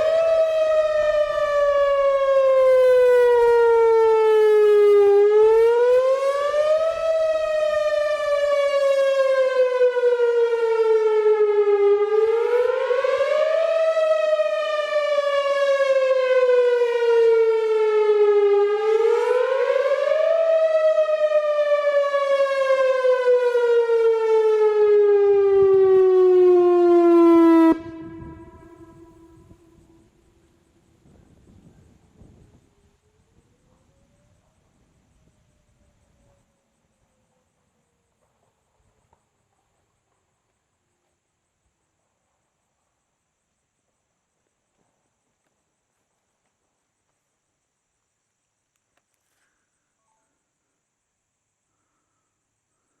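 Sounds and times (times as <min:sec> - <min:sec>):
warning siren wailing: 0:00.0 - 0:30.3.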